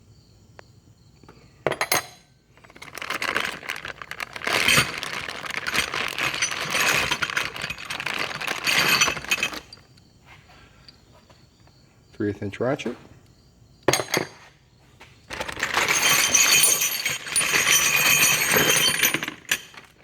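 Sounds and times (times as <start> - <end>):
metal hand tools clinking and rattling: 1.7 - 10.0, 15.3 - 20.0.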